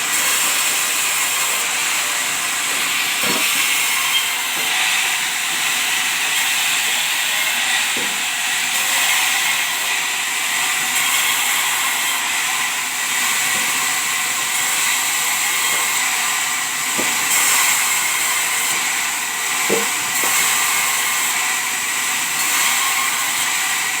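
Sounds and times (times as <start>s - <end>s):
sawmill machinery hissing: 0.0s - 24.0s.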